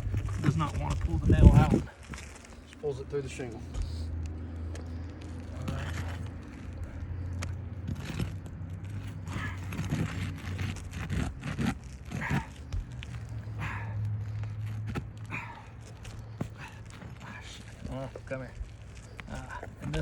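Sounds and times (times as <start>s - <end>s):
steady low hum: 0.0s - 20.0s
tool prying roof shingles: 7.8s - 13.0s.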